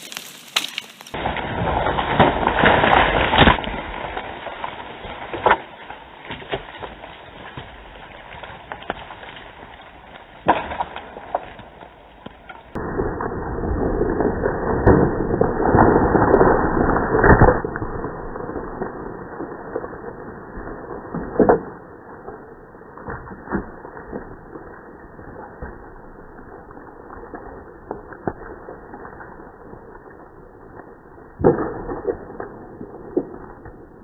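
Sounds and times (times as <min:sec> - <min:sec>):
twigs snapping and rustling: 0:00.0 - 0:12.8
tree falling with heavy thud: 0:00.0 - 0:28.6
branches crashing: 0:00.0 - 0:34.0
wood cracking: 0:00.0 - 0:34.0.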